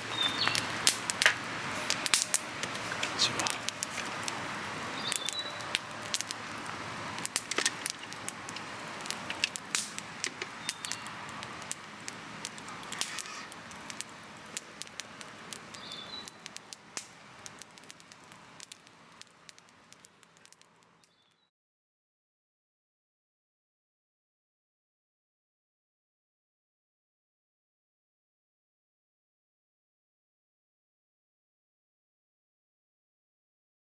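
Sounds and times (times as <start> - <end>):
wood fire crackling and popping: 0.0 - 21.3.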